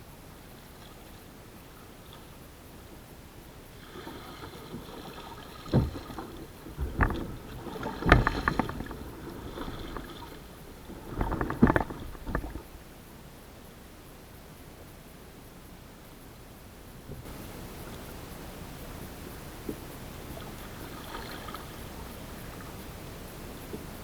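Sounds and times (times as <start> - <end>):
low steady background noise: 0.0 - 24.0
kayak paddle strokes splashing: 0.5 - 2.4, 3.6 - 12.8, 19.4 - 24.0.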